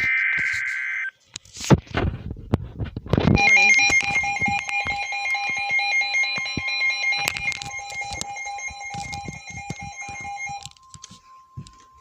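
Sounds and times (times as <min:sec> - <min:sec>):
two-tone electronic alert tone: 0:03.3 - 0:12.0.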